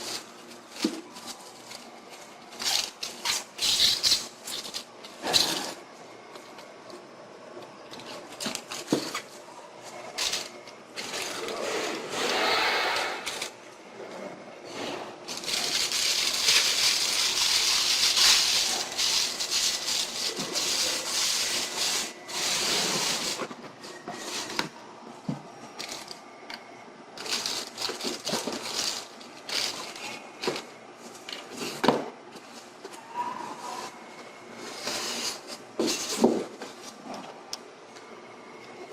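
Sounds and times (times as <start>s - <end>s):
plastic wrap crinkling: 0.0s - 5.8s, 15.3s - 23.5s, 27.2s - 31.8s.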